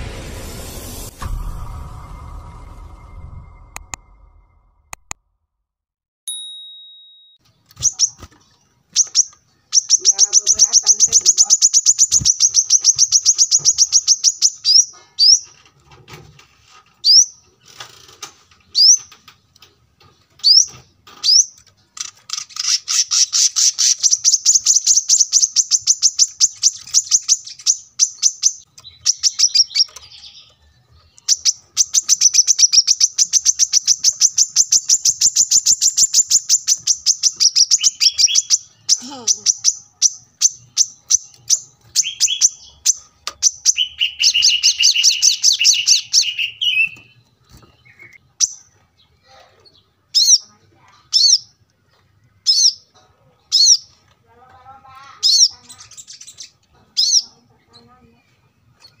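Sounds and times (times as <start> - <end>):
bird singing high trills: 22.6 - 48.6.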